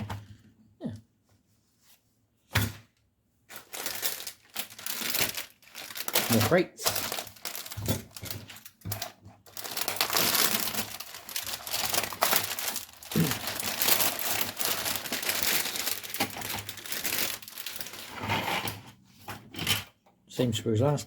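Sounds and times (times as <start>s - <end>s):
plastic packaging crinkling: 3.5s - 18.4s.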